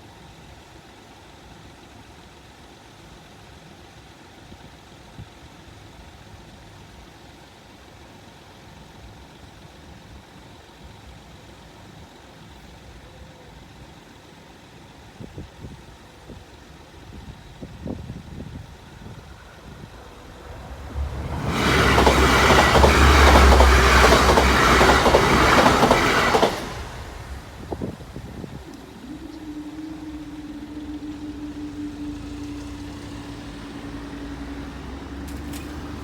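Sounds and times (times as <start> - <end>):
steady hum: 18.6 - 35.0
train passing at speed: 18.6 - 36.0.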